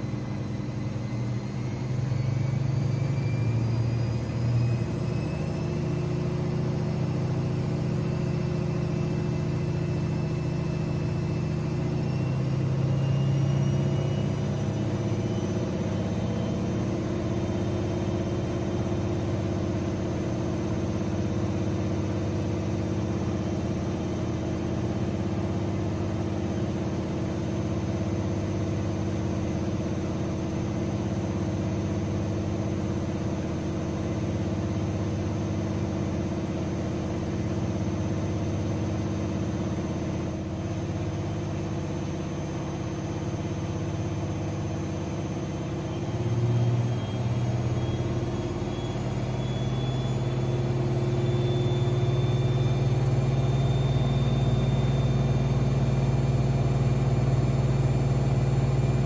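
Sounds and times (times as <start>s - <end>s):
washing machine spinning: 0.0s - 59.0s
high motor whine: 43.5s - 59.0s.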